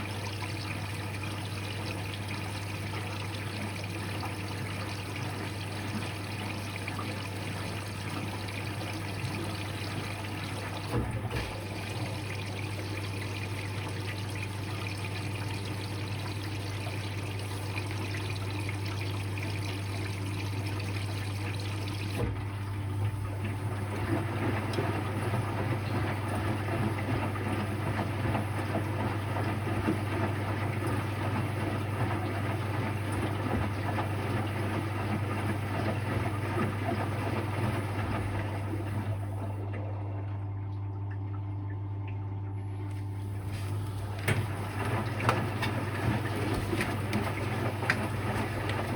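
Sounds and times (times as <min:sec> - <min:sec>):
washing machine hum: 0:00.0 - 0:48.9
water splashing and trickling: 0:43.0 - 0:48.9
washing machine knock: 0:43.9 - 0:48.9.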